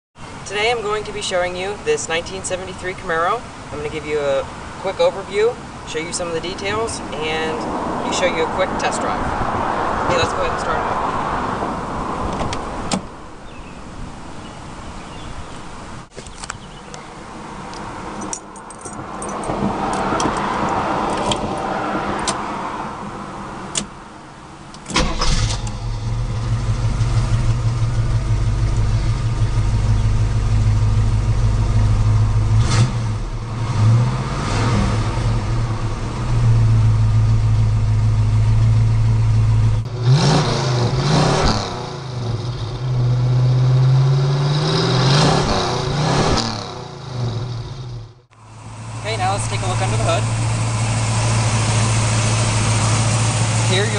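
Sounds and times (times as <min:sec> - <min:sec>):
car engine starting and idling: 0:23.2 - 0:53.9
engine revving: 0:24.9 - 0:53.9.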